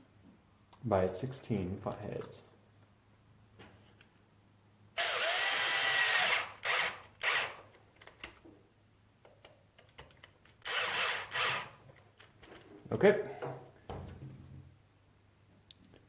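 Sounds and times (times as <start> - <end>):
power screwdriver driving screws: 5.0 - 7.6, 10.6 - 11.8.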